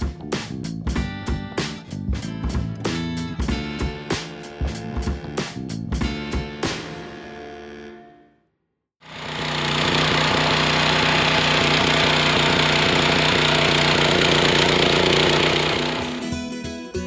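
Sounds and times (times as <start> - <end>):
small gasoline engine running: 9.0 - 16.2.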